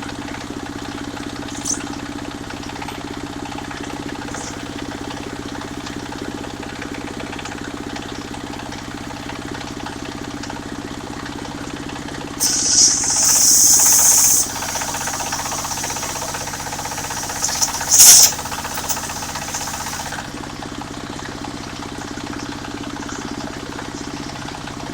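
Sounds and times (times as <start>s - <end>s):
saw blade hissing through wood: 12.4s - 20.3s
sawmill engine running: 12.4s - 20.4s.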